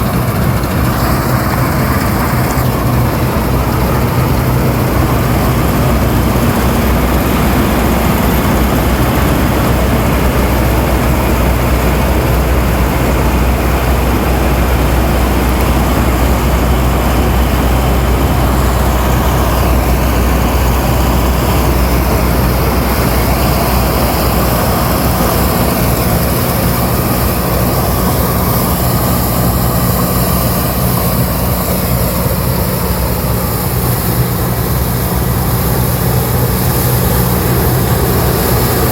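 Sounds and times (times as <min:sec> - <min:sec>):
combine harvester engine drone: 0:00.0 - 0:38.9
threshing machinery noise: 0:00.0 - 0:38.9.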